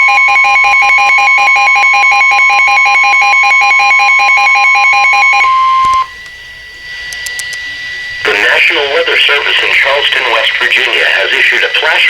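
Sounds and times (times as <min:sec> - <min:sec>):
steady alarm tone: 0:00.0 - 0:12.0
rapidly wavering tone: 0:05.4 - 0:10.7.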